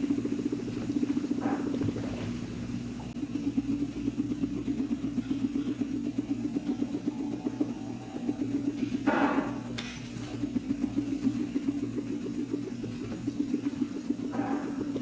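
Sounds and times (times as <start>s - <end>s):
guinea pig purring: 10.5s - 15.0s.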